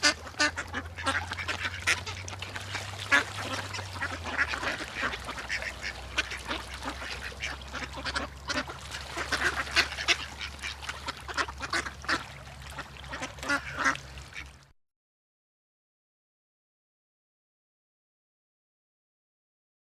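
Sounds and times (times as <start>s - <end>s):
low steady hum: 0.0s - 14.6s.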